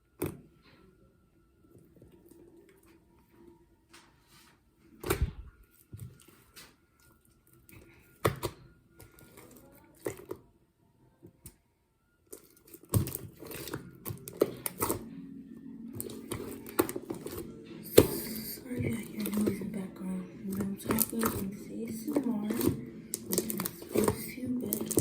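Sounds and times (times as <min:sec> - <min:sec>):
slime squishing with pops: 0:12.3 - 0:15.1, 0:20.5 - 0:25.0
crackling pops: 0:20.5 - 0:25.0.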